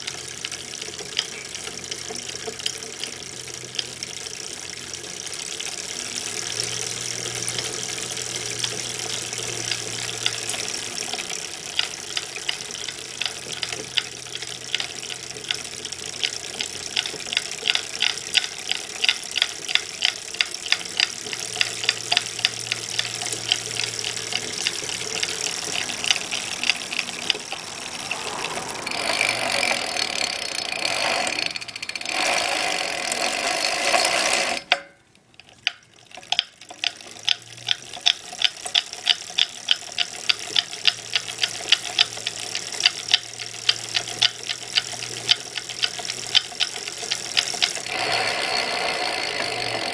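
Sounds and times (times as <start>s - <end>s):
bike drivetrain knocking: 0.0s - 49.9s
steady rushing noise: 24.4s - 32.0s.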